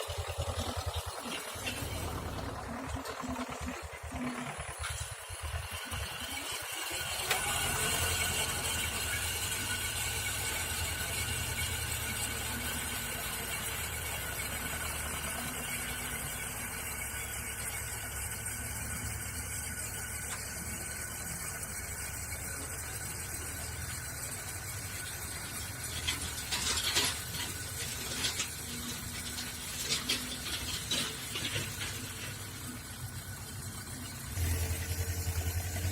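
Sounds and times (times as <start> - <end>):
electric cultivator motor whining: 0.0 - 35.9.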